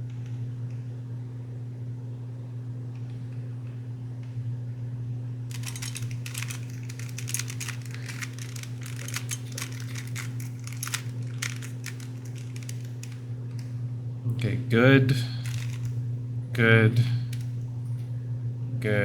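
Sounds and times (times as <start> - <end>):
steady low hum: 0.0 - 19.0
puzzle cube plastic clicks: 5.5 - 13.2, 15.4 - 15.9.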